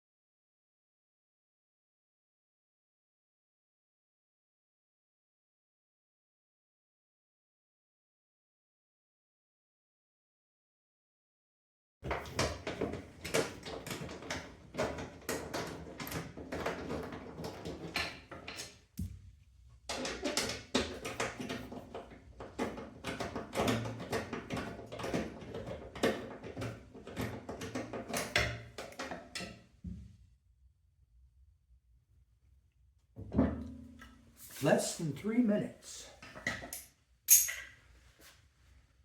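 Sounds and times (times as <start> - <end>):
hand tools clicking and clinking: 36.6 - 37.8.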